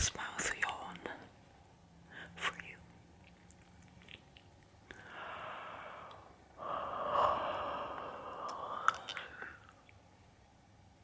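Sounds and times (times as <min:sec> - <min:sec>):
person breathing into microphone: 0:05.0 - 0:09.6
mouth click: 0:07.9 - 0:09.5.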